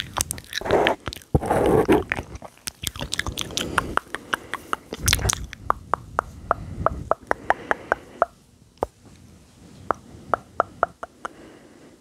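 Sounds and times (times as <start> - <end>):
wet mouth clicks and smacks: 0.0 - 8.0.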